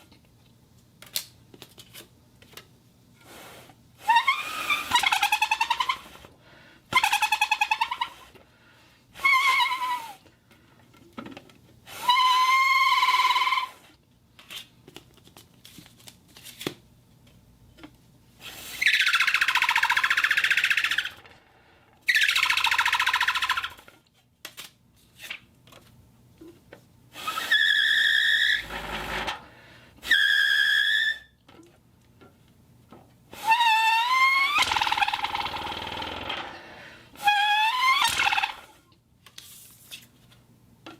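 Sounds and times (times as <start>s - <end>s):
whistle blasts: 30.0s - 31.4s.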